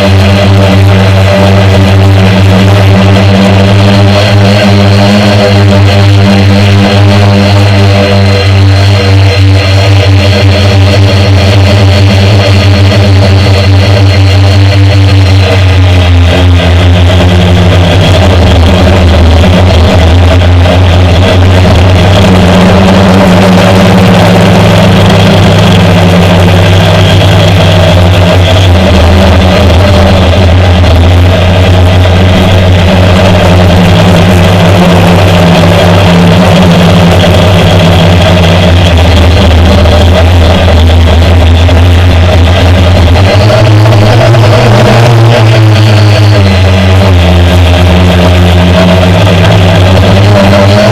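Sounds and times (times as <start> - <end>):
drone propellers droning: 0.0 - 50.9.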